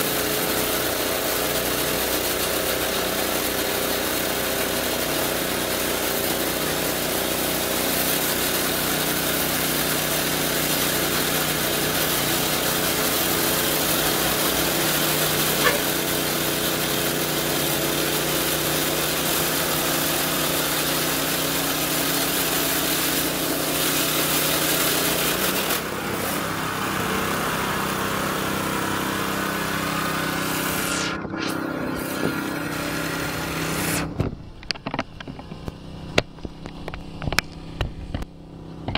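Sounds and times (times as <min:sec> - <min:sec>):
motor engine running: 0:00.0 - 0:38.9.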